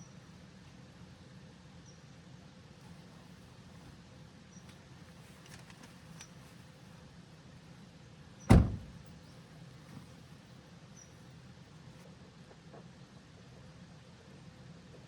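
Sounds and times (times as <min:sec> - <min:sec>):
car door shutting: 0:08.5 - 0:09.1.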